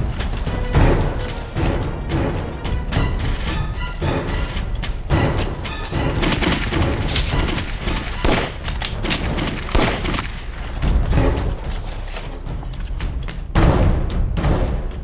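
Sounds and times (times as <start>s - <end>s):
gunfire: 5.6s - 12.4s, 13.6s - 14.9s.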